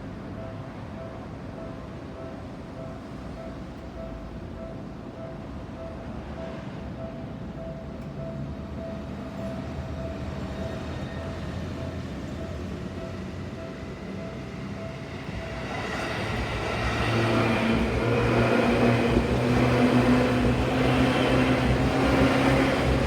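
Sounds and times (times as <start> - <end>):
electric train approaching: 0.0 - 23.0
train wheels on rails: 9.1 - 23.0
train motors humming: 10.3 - 23.0.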